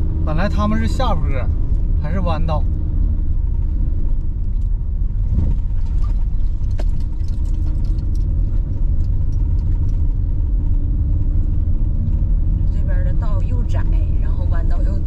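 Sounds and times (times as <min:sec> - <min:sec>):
engine and road rumble: 0:00.0 - 0:15.0
light clicks and rattles: 0:05.4 - 0:10.2.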